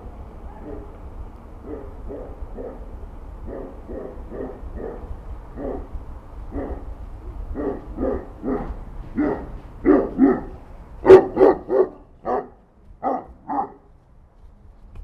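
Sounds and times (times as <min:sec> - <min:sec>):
dog barking: 0:00.5 - 0:00.9, 0:01.6 - 0:05.9, 0:06.5 - 0:06.9, 0:07.5 - 0:13.9.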